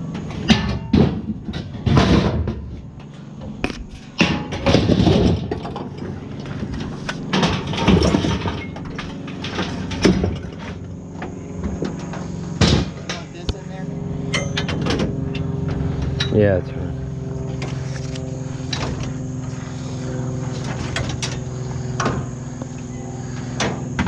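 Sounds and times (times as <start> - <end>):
steady low hum: 0.0 - 24.0
items knocking and clattering: 0.4 - 10.8.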